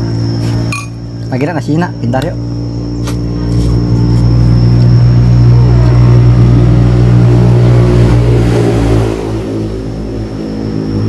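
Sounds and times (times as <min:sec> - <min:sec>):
vehicle engine running: 0:00.0 - 0:11.0.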